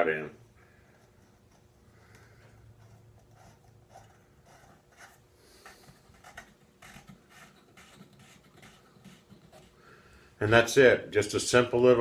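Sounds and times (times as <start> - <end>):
light taps and scrapes: 0.9 - 9.8.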